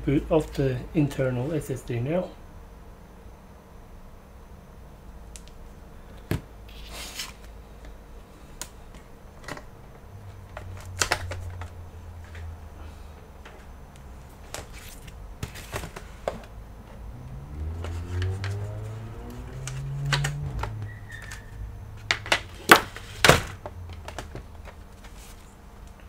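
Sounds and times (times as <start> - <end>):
low hum rising in pitch: 16.5 - 22.4.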